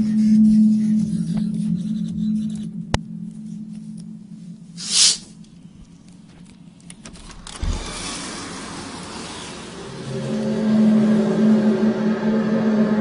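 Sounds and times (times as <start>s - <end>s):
low droning hum: 0.0s - 13.0s
short loud hiss: 4.8s - 5.3s
broad traffic-like noise: 7.5s - 13.0s.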